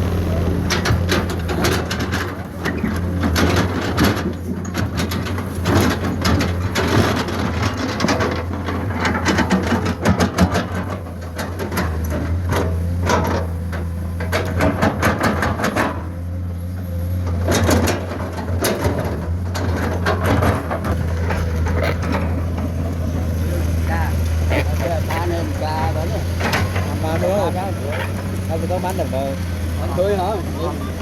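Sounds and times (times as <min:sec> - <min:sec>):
excavator bucket clanking: 0:00.0 - 0:31.0
excavator diesel engine: 0:00.0 - 0:31.0
dirt and stones tumbling: 0:17.0 - 0:31.0.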